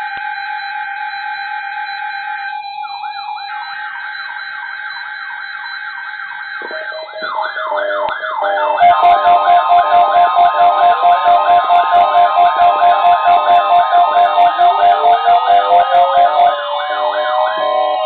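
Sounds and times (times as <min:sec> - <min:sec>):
siren sweeping up and down: 0:00.0 - 0:18.0
steady electronic alarm tones: 0:00.0 - 0:18.0
pulsing beat with low thumps: 0:06.6 - 0:07.7.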